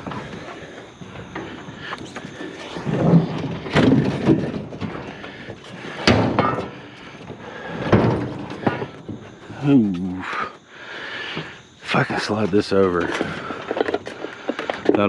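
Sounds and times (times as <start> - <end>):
scrap bumping and knocking: 0.0 - 9.4, 12.4 - 15.0.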